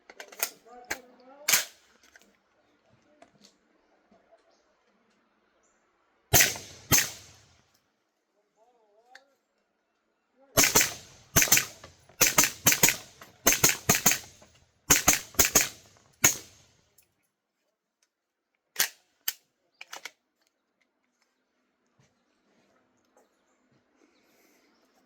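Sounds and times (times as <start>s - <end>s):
suppressed pistol shots: 6.3s - 7.5s, 10.6s - 16.7s.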